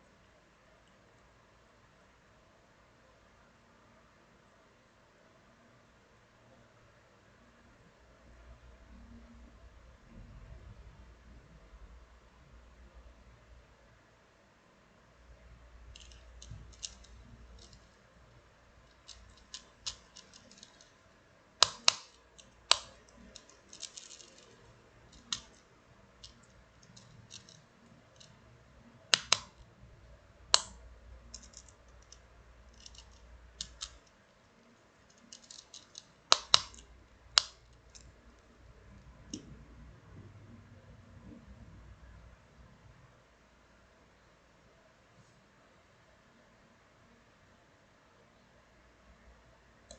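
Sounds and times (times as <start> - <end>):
fidget spinner clicking: 15.9 - 18.0, 18.8 - 28.4, 29.1 - 29.6, 30.5 - 34.2, 35.1 - 38.1.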